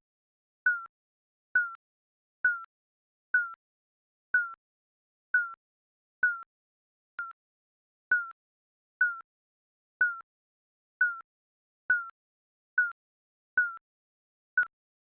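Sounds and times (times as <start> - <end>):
timer beeping: 1.6 - 1.8, 2.5 - 2.7, 5.4 - 5.6, 6.2 - 6.5, 8.1 - 8.4, 9.0 - 9.2, 11.0 - 11.2.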